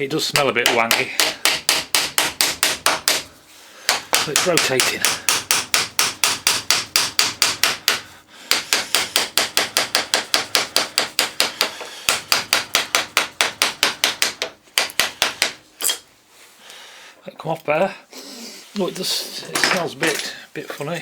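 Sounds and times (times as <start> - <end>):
hammer tapping on metal: 0.3 - 3.3, 3.9 - 15.6.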